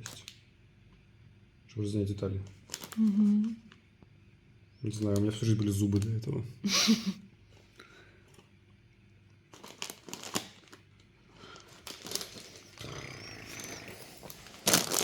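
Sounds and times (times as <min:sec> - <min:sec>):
packaging crinkling and rustling: 0:02.5 - 0:03.7, 0:04.9 - 0:06.3, 0:09.5 - 0:15.0.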